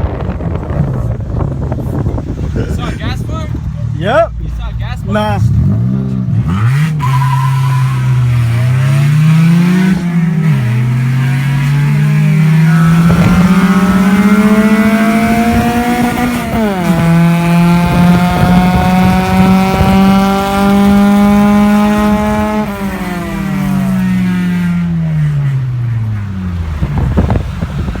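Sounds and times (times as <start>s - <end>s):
car engine accelerating: 0.0s - 28.0s.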